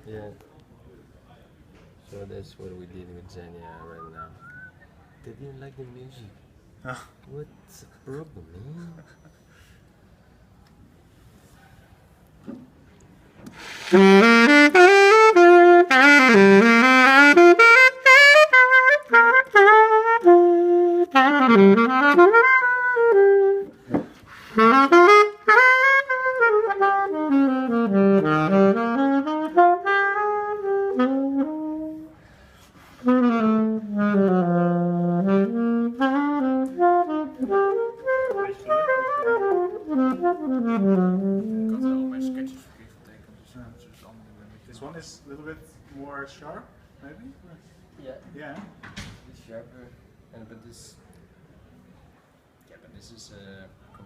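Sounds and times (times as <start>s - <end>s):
solo saxophone jazz phrase: 13.5s - 42.8s.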